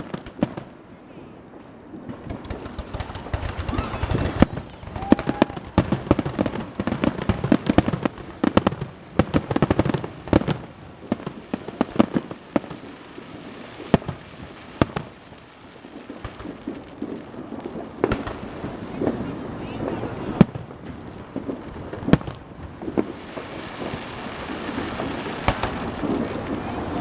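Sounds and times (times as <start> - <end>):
fireworks bangs: 0.0 - 27.0.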